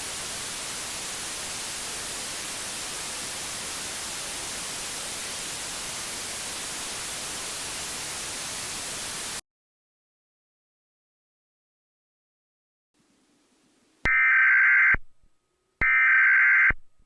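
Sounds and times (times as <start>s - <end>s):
broadcast static hiss: 0.0s - 9.4s, 13.0s - 17.0s.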